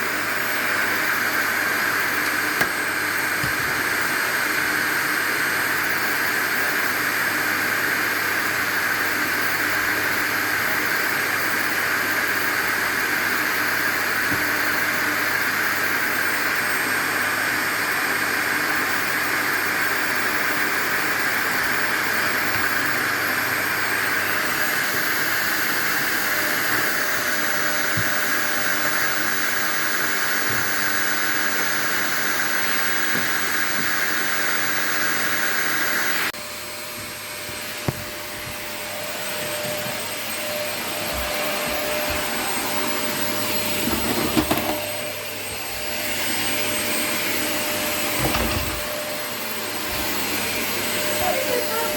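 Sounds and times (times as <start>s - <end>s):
vacuum cleaner running: 0.0s - 51.9s.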